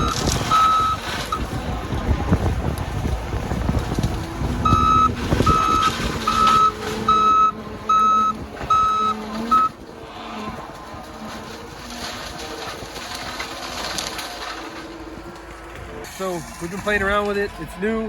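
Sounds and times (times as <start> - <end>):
backup alarm beeping: 0.0 - 1.4, 4.6 - 9.8
machine engine running: 0.0 - 17.7.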